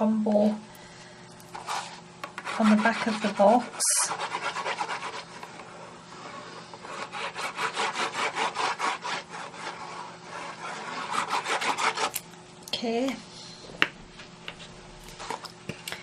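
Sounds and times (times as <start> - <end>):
glue applicator scratching on card: 1.6 - 5.7, 6.8 - 12.2.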